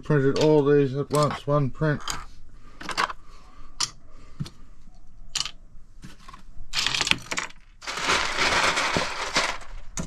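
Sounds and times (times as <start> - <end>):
plastic pieces clicking and knocking: 5.3 - 5.6, 6.7 - 10.0
clattering rattle: 6.8 - 10.0.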